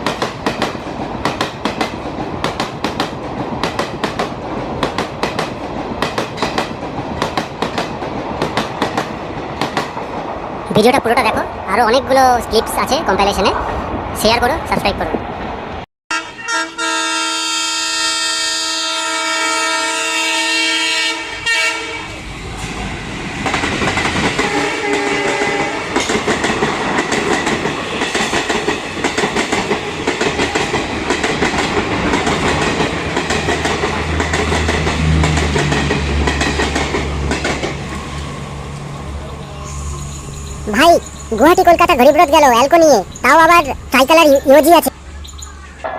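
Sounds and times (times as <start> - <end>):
train wheels clattering over rail joints: 0.0 - 10.3
locomotive horn blast: 16.1 - 22.2, 24.4 - 25.9.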